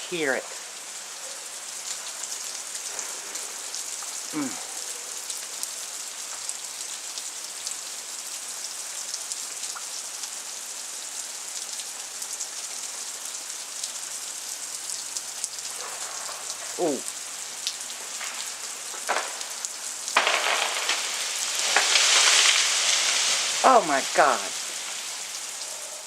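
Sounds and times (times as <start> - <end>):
freezing rain pattering on ice: 0.0 - 26.0
person exclaiming: 4.4 - 4.6, 16.8 - 17.1, 23.6 - 24.6.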